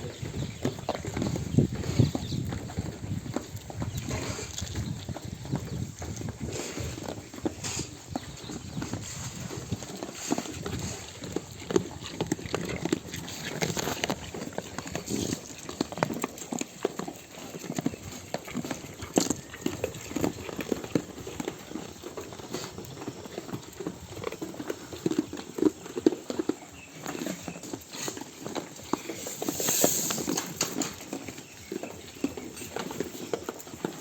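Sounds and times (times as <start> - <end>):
sheep hooves clattering: 0.0 - 34.0
rustling hiss: 28.9 - 31.0.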